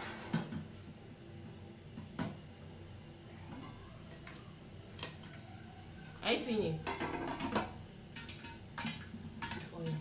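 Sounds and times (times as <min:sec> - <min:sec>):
popcorn popping in a pot: 0:03.6 - 0:10.0.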